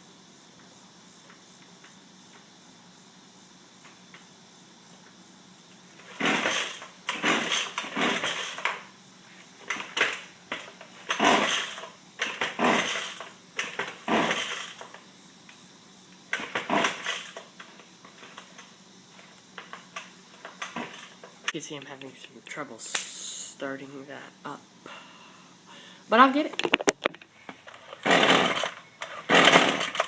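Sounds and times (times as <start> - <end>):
recoil starter rope yanks: 6.1 - 8.8, 9.7 - 15.0, 16.3 - 17.4, 27.7 - 30.0.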